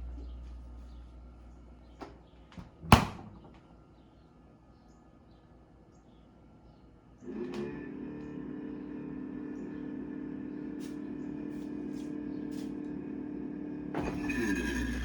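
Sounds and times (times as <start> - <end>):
freezer fan humming grind: 0.0 - 2.0, 7.2 - 15.0.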